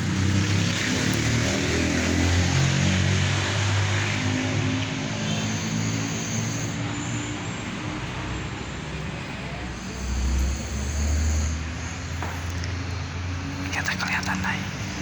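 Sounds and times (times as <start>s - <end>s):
road traffic noise: 0.0s - 15.0s
person snoring: 5.2s - 6.8s, 9.7s - 12.7s.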